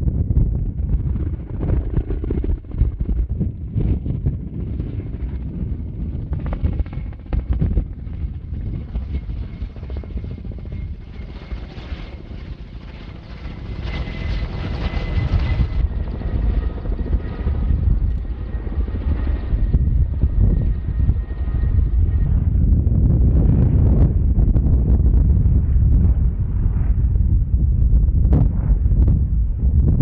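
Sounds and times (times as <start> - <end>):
helicopter rotor with high whine: 0.0 - 30.0.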